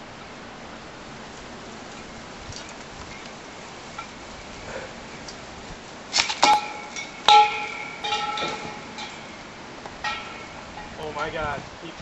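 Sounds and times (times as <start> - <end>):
object striking metal pole: 6.2 - 11.0.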